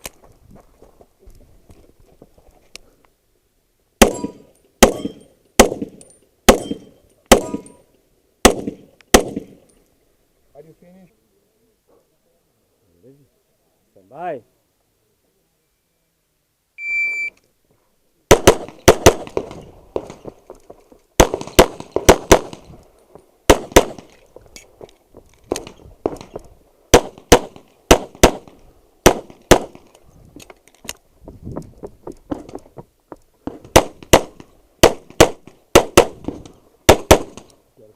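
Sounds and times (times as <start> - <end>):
handgun shots: 4.0 - 7.8
shot timer beep: 16.8 - 17.4.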